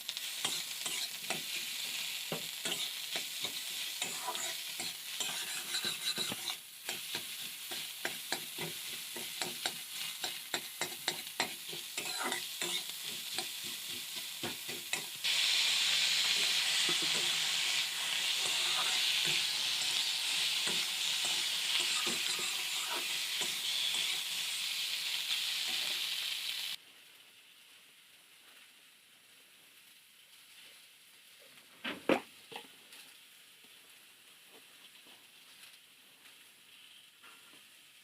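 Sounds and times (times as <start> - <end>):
curry sizzling in a pan: 0.0 - 31.6.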